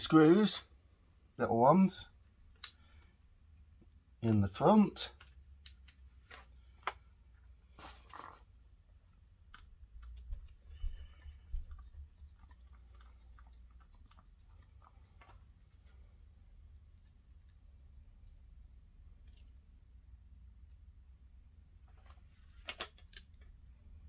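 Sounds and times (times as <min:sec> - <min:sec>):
small screws and plastic parts clicking: 0:02.4 - 0:03.1, 0:16.7 - 0:18.5, 0:19.1 - 0:21.0, 0:21.9 - 0:24.0.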